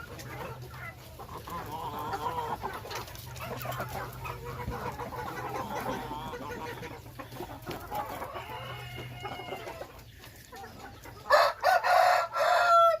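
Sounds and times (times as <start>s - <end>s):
hens clucking: 0.0s - 13.0s
rooster crowing loudly: 11.3s - 13.0s.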